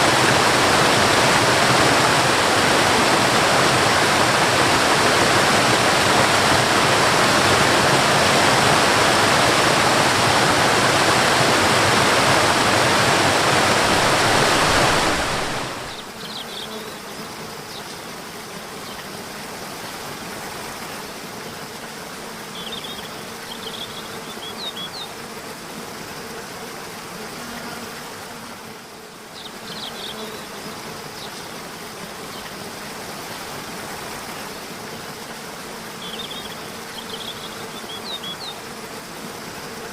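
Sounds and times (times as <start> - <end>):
waterfall rushing: 0.0 - 16.1
faint steady buzz: 0.0 - 39.9.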